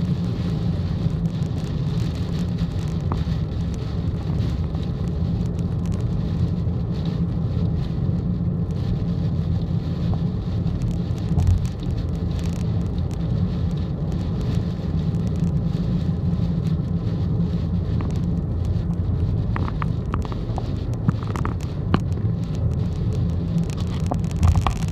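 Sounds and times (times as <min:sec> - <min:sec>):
car driving drone: 0:00.0 - 0:24.9
heavy rain hitting car: 0:00.0 - 0:24.9.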